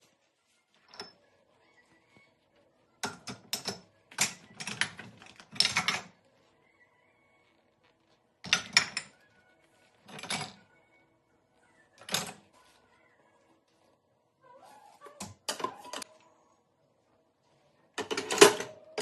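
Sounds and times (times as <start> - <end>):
faint background music: 0.0 - 19.0
dishes clattering in dishwasher racks: 18.0 - 18.8.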